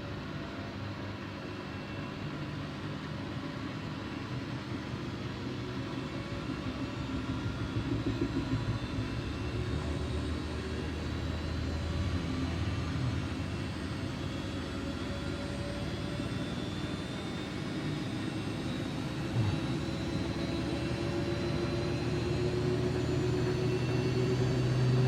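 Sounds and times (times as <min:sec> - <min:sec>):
washing machine motor hum: 0:05.7 - 0:17.8
low drum rumble: 0:06.6 - 0:13.2.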